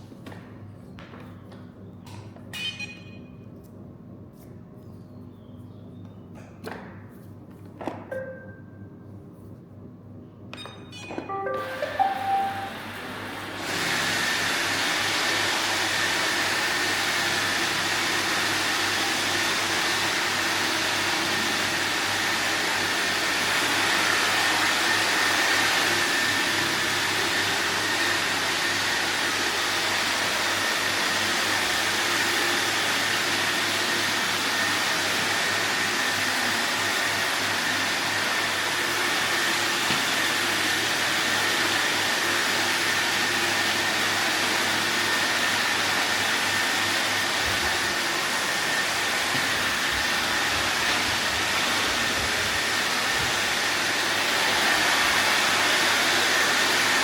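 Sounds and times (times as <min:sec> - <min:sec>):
robot vacuum cleaner whirring: 0:12.0 - 0:57.0.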